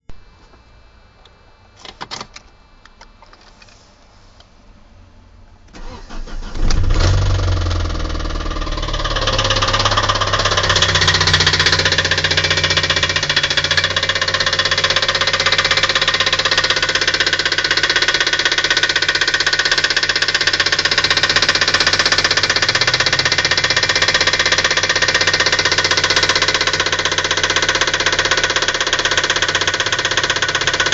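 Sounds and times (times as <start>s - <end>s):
car engine cranking and running: 5.7s - 30.9s
heavy engine knock: 7.6s - 30.9s.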